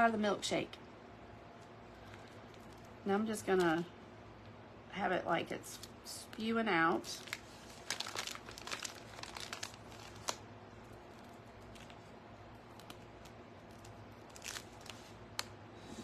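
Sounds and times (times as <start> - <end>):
plastic bag crinkling: 5.8 - 15.5.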